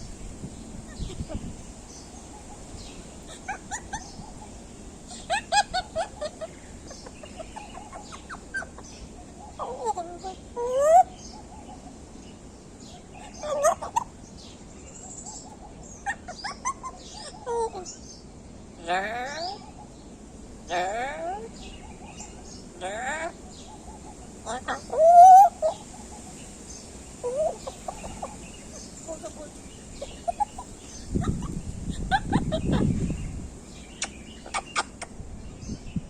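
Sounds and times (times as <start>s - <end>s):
parrot chattering: 3.0s - 11.6s, 13.2s - 14.1s, 15.9s - 18.0s, 20.7s - 26.2s, 27.2s - 32.9s, 34.0s - 35.2s.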